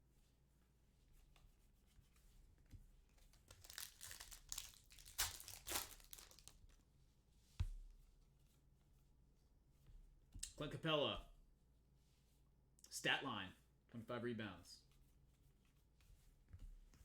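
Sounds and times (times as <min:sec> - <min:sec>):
trading cards rustling: 0:03.3 - 0:06.8.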